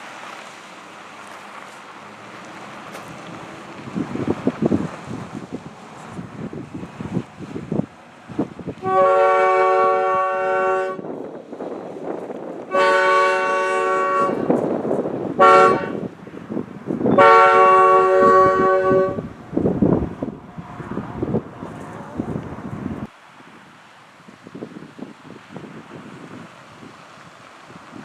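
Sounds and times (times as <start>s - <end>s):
train air horn blasts: 8.8s - 11.2s, 12.7s - 14.6s, 15.4s - 16.1s, 17.1s - 19.3s.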